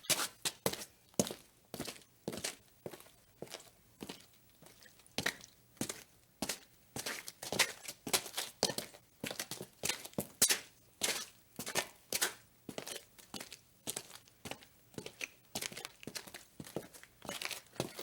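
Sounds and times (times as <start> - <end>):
footsteps scuffing: 0.0 - 4.2, 13.9 - 18.0.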